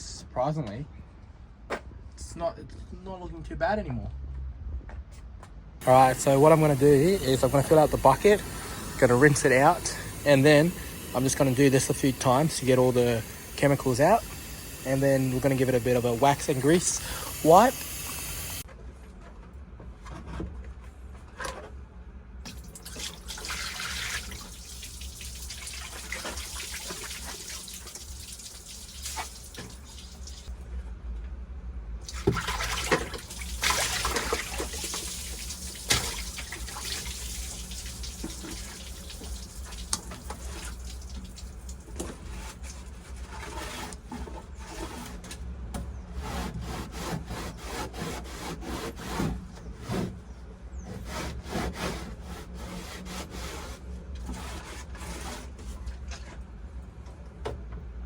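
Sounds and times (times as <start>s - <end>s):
tap water running into bucket: 5.8s - 18.6s, 22.5s - 30.5s, 32.0s - 42.9s.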